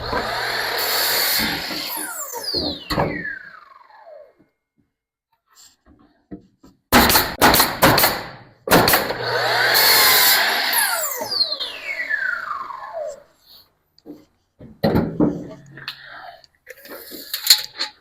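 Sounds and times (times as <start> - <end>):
electric saw cutting wood: 0.0 - 4.3, 8.8 - 13.3.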